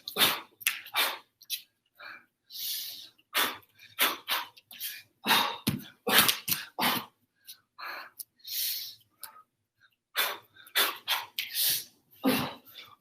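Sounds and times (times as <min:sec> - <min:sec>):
sharp huffs of breath: 0:02.0 - 0:05.6, 0:07.8 - 0:09.4.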